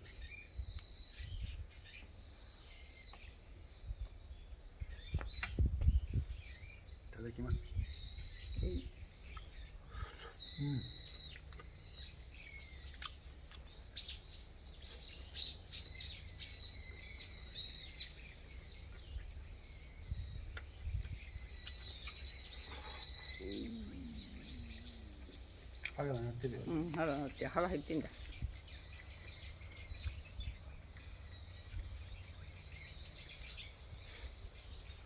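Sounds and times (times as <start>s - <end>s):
small birds chirping: 0.0s - 35.0s
steady low rumble: 23.4s - 35.0s.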